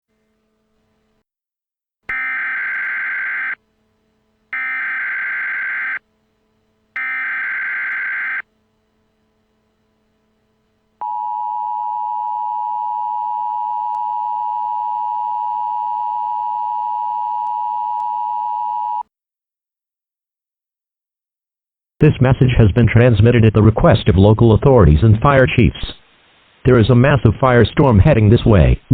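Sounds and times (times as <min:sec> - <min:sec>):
data tone bursts: 0:02.1 - 0:03.6, 0:04.6 - 0:06.0, 0:07.0 - 0:08.4
two-tone alert signal: 0:02.1 - 0:03.6, 0:04.6 - 0:06.0, 0:07.0 - 0:08.4.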